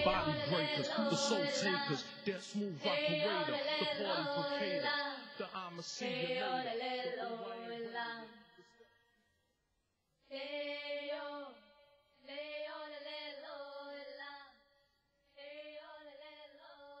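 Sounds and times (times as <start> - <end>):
long held voice-like notes: 0.0 - 2.1.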